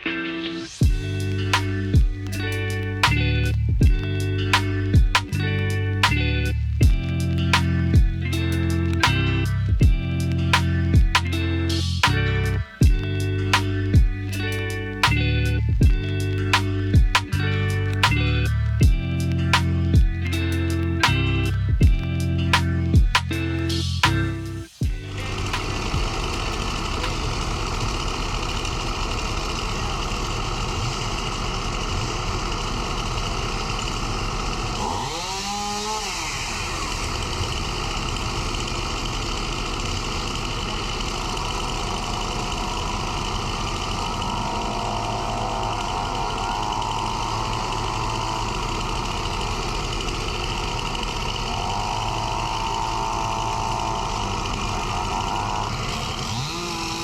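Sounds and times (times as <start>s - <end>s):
hydraulic whine: 0.0s - 57.0s
excavator engine running: 0.7s - 57.0s.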